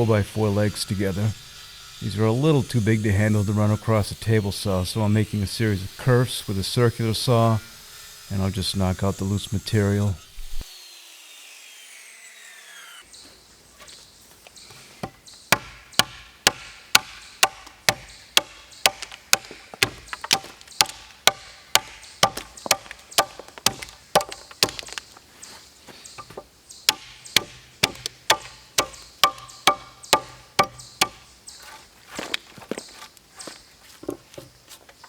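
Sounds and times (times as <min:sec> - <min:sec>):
circular saw blade winding down: 0:00.0 - 0:13.1
hammer blows on wood: 0:26.2 - 0:31.3.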